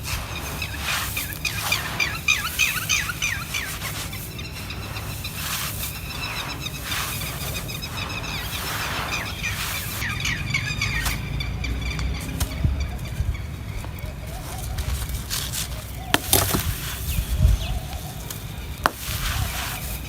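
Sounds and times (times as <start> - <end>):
concrete crumbling and crunching: 14.8 - 17.1.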